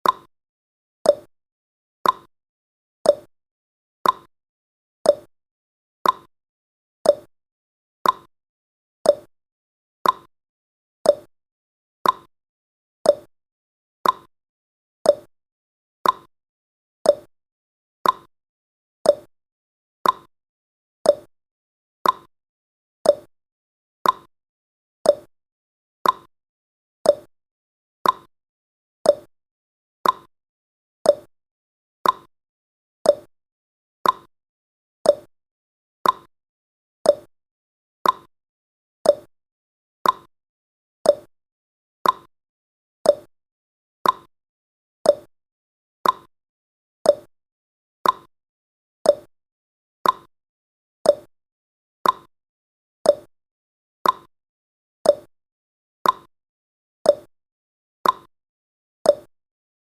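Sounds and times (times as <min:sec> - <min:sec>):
timer ticking: 0:00.0 - 0:00.3, 0:01.1 - 0:01.3, 0:02.0 - 0:02.3, 0:03.1 - 0:03.3, 0:04.0 - 0:04.3, 0:05.1 - 0:05.3, 0:06.0 - 0:06.3, 0:07.1 - 0:07.3, 0:08.0 - 0:08.3, 0:09.1 - 0:09.3, 0:10.0 - 0:10.3, 0:11.1 - 0:11.3, 0:12.0 - 0:12.3, 0:13.1 - 0:13.3, 0:14.0 - 0:14.3, 0:15.1 - 0:15.3, 0:16.0 - 0:16.3, 0:17.1 - 0:17.3, 0:18.0 - 0:18.3, 0:19.1 - 0:19.3, 0:20.0 - 0:20.3, 0:21.1 - 0:21.3, 0:22.0 - 0:22.3, 0:23.0 - 0:23.3, 0:24.0 - 0:24.3, 0:25.1 - 0:25.3, 0:26.0 - 0:26.3, 0:27.1 - 0:27.3, 0:28.0 - 0:28.3, 0:29.1 - 0:29.3, 0:30.0 - 0:30.3, 0:31.1 - 0:31.3, 0:32.0 - 0:32.3, 0:33.1 - 0:33.3, 0:34.0 - 0:34.3, 0:35.1 - 0:35.3, 0:36.0 - 0:36.3, 0:37.1 - 0:37.3, 0:38.0 - 0:38.3, 0:39.0 - 0:39.3, 0:40.0 - 0:40.3, 0:41.1 - 0:41.3, 0:42.0 - 0:42.3, 0:43.1 - 0:43.3, 0:44.0 - 0:44.3, 0:45.1 - 0:45.3, 0:46.0 - 0:46.3, 0:47.1 - 0:47.3, 0:48.0 - 0:48.3, 0:49.1 - 0:49.3, 0:50.0 - 0:50.3, 0:51.1 - 0:51.3, 0:52.0 - 0:52.3, 0:53.1 - 0:53.3, 0:54.0 - 0:54.3, 0:55.1 - 0:55.3, 0:56.0 - 0:56.3, 0:57.1 - 0:57.3, 0:58.0 - 0:58.3, 0:59.1 - 0:59.3.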